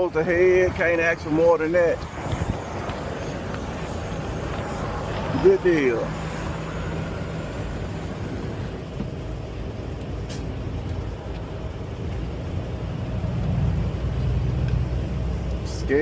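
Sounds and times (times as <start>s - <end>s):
truck engine and road noise: 0.0s - 16.0s.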